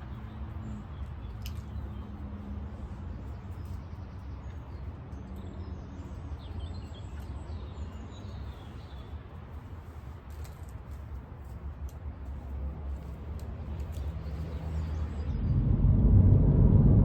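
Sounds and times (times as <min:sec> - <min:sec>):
small birds chirping: 0:00.0 - 0:10.2
steady low rumble: 0:11.1 - 0:17.0.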